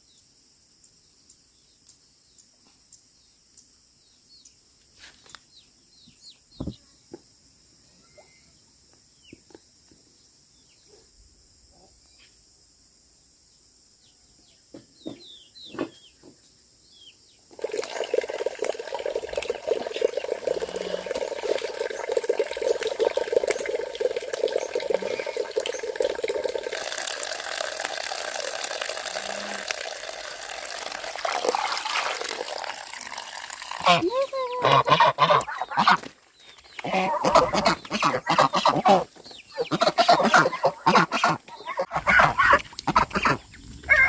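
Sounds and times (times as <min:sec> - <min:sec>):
water running and splashing: 0:17.5 - 0:36.1, 0:36.7 - 0:43.4.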